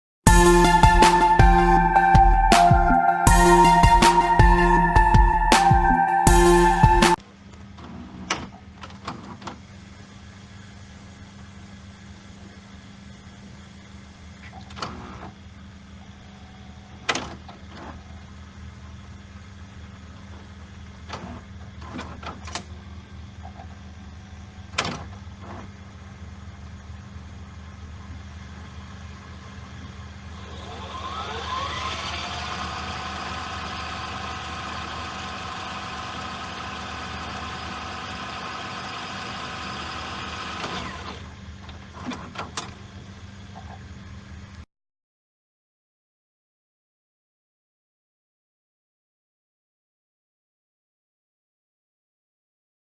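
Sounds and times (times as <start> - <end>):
transport motor hum: 24.0 - 43.7
tape spools whirring: 30.4 - 41.3.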